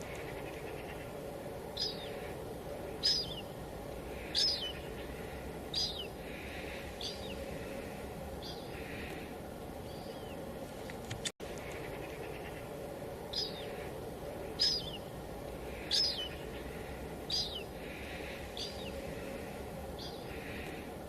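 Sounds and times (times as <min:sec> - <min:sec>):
bird calling: 0:00.0 - 0:10.6, 0:11.4 - 0:21.0.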